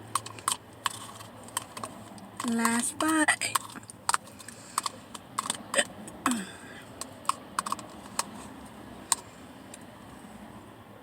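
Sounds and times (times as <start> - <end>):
plastic spoon clicking on cup: 0.1 - 5.9, 7.0 - 8.4.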